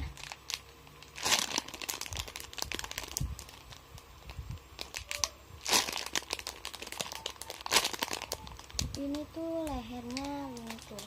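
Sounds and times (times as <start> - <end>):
thin plastic crinkling: 0.0 - 11.0.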